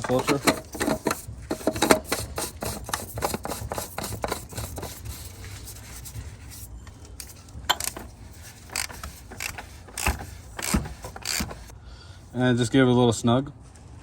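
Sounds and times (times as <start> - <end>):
plastic clicks and scrapes: 0.0 - 5.0, 7.1 - 11.7.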